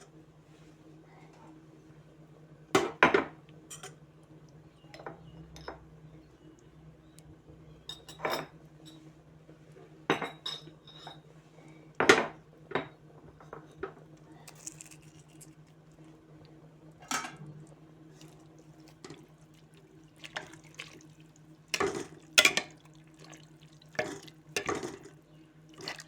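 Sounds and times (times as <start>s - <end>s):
metal spoon clinking on pot: 21.7s - 22.8s, 24.0s - 25.2s.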